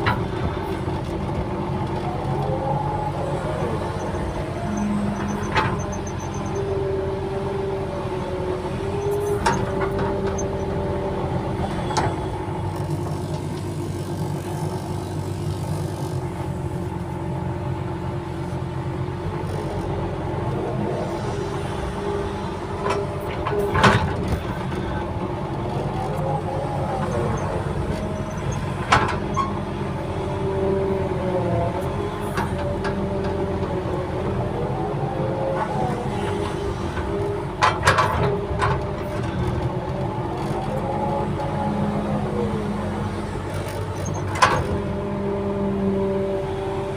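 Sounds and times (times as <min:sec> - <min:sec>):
heavy diesel engine under load: 0:00.0 - 0:46.9.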